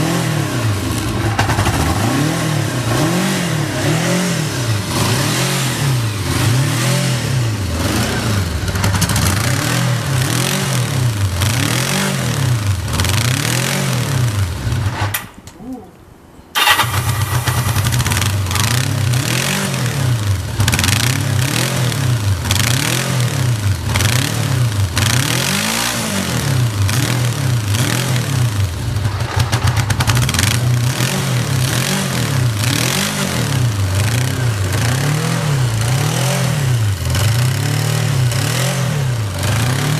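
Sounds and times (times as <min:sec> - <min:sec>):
motorcycle engine revving: 0:00.0 - 0:15.2, 0:16.6 - 0:39.9
motorcycle electric starter: 0:16.6 - 0:19.4.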